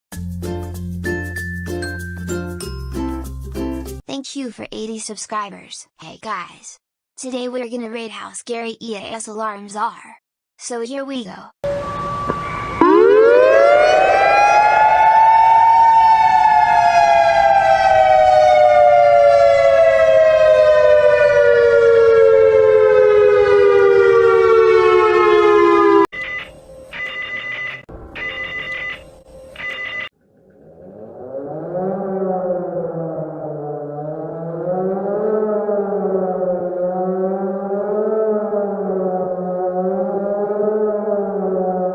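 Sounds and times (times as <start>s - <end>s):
civil defense siren winding: 11.6s - 26.1s, 30.2s - 41.9s
electronic ringing tone bursts: 26.1s - 30.1s.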